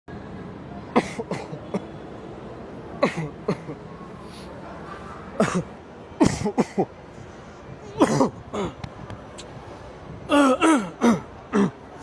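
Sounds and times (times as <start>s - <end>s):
person coughing: 1.0s - 1.8s, 5.4s - 6.9s, 8.0s - 8.7s, 10.3s - 11.8s.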